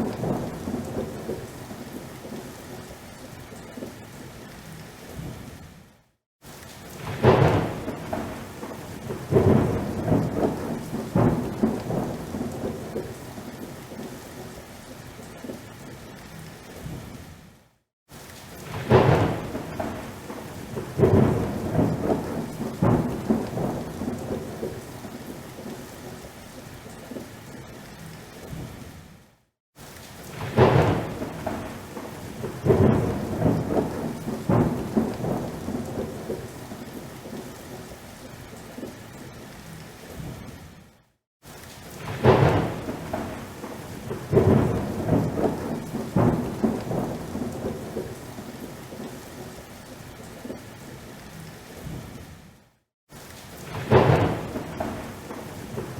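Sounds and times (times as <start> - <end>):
rumbling thunderclaps: 0.0 - 2.8, 6.9 - 14.1, 18.6 - 25.8, 30.3 - 37.4, 42.0 - 49.1, 53.6 - 55.9
steady rain: 0.0 - 55.9.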